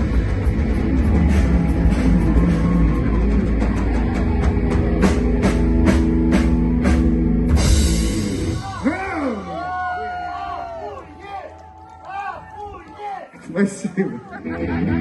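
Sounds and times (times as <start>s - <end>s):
accented drum and cymbal hits: 0.0s - 9.0s
live rock band playing: 0.0s - 9.8s, 14.4s - 15.0s.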